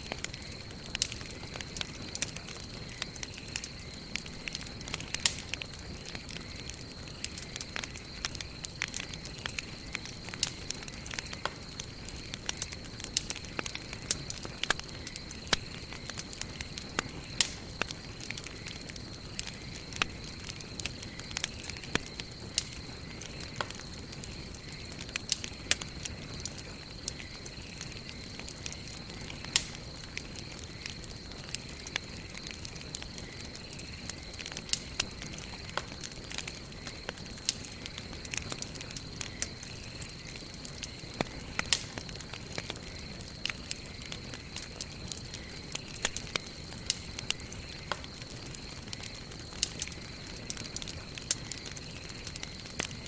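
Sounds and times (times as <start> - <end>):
wood fire crackling: 0.0 - 53.0.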